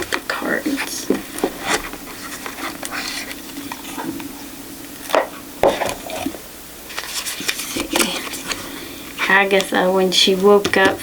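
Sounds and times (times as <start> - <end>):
cards and cardboard box handled: 0.0 - 4.2, 6.9 - 8.7.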